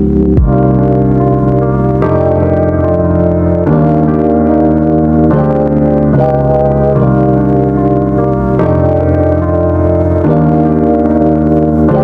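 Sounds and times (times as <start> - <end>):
organ-like keyboard chords: 0.0 - 12.0.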